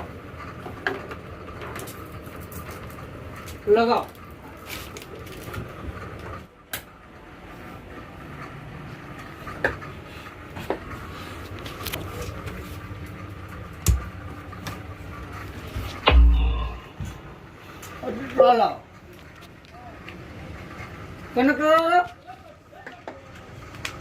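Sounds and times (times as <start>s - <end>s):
steady low hum: 5.7s - 21.4s
heavy low thump: 16.0s - 17.4s.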